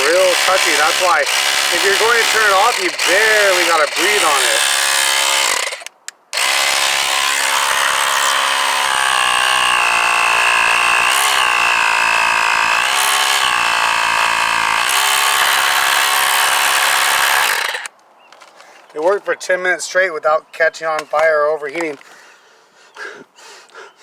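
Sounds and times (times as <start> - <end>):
air compressor humming: 7.7 - 17.8.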